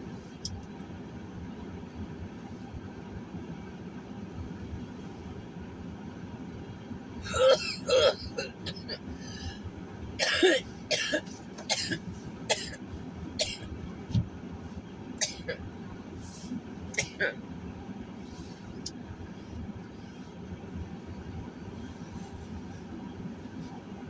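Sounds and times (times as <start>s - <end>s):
car cabin hum: 0.0s - 24.0s
person coughing: 7.2s - 9.6s, 10.2s - 12.8s, 13.4s - 13.7s, 15.2s - 15.6s, 17.0s - 17.4s.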